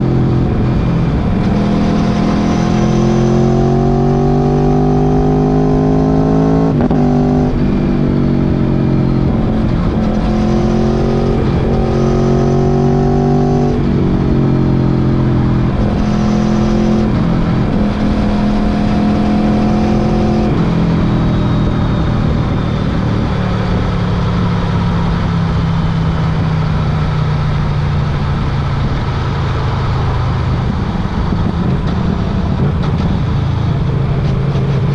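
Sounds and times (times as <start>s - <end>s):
motorcycle engine accelerating: 0.0s - 34.9s.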